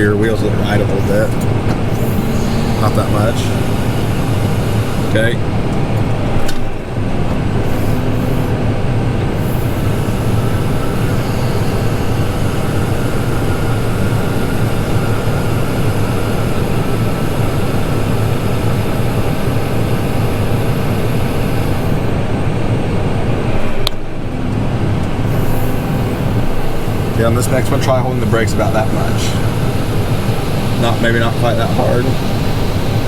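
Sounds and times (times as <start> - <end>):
auger running: 0.0 - 33.0
tractor engine hum: 0.0 - 33.0
corn pouring hiss: 25.3 - 33.0.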